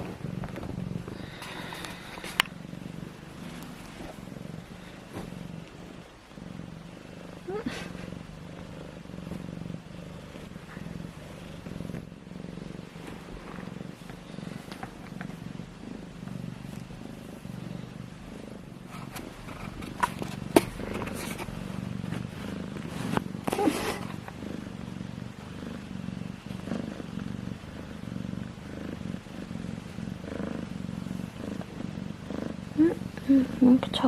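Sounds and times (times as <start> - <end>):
cat purring: 0.0 - 34.0.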